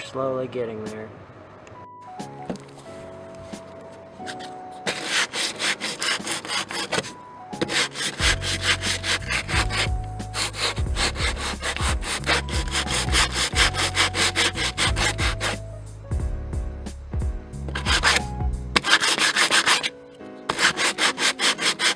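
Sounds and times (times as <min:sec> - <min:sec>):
sandpaper rasping on wood: 0:04.3 - 0:15.6, 0:17.7 - 0:19.9, 0:20.5 - 0:21.9
background music with bass: 0:08.2 - 0:18.9.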